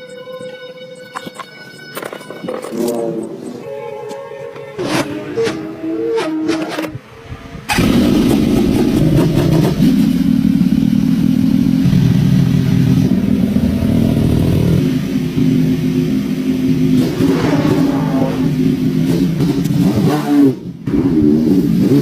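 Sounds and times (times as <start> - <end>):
motorcycle engine revving: 4.8 - 22.0.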